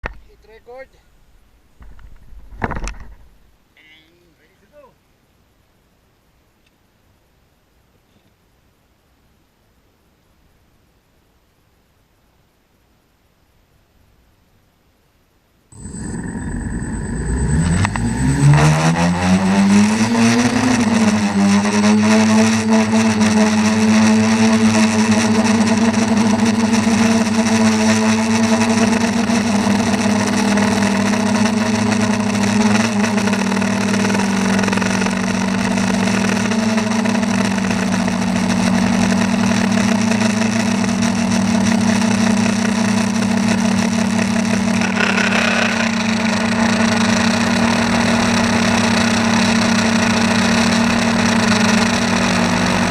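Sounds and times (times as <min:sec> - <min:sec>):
motor spinning: 0:15.8 - 0:52.9.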